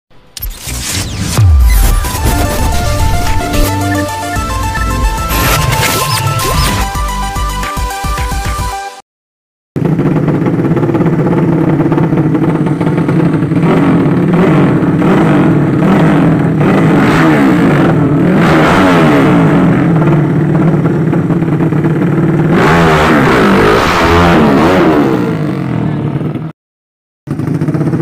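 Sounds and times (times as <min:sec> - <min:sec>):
motorcycle engines at full throttle: 0:09.8 - 0:26.5, 0:27.3 - 0:28.0.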